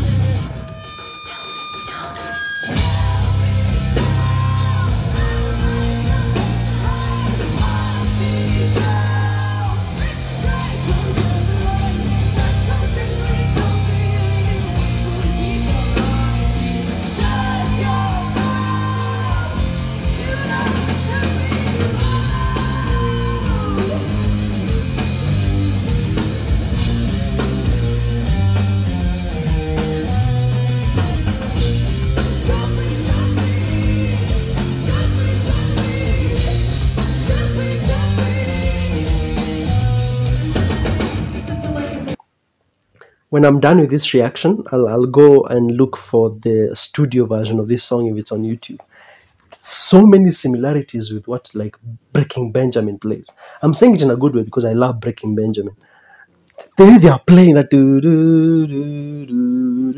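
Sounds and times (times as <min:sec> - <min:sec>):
bass guitar: 0:00.0 - 0:00.7, 0:02.7 - 0:42.2
distorted electric guitar: 0:00.0 - 0:42.2
drums: 0:00.0 - 0:42.4
person singing: 0:01.9 - 0:25.5, 0:29.7 - 0:42.2, 0:57.6 - 0:59.9.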